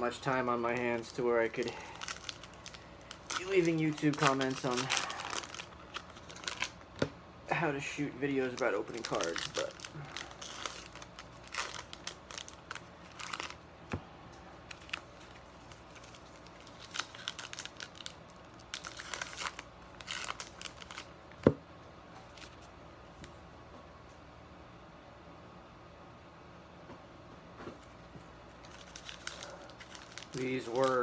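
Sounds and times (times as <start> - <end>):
plastic wrapping crinkling and tearing: 0.1 - 7.0, 8.2 - 13.6, 14.6 - 21.1, 28.6 - 31.0.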